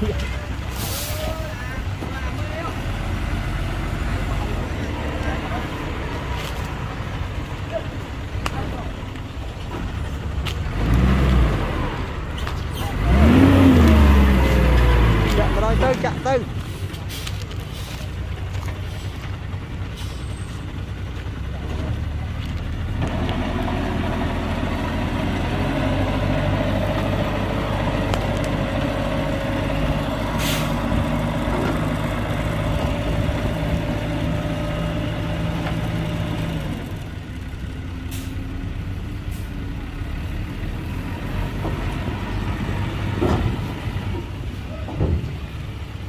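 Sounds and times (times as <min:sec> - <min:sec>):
heavy diesel engines running: 0:00.0 - 0:46.0
short hiss: 0:00.7 - 0:01.3.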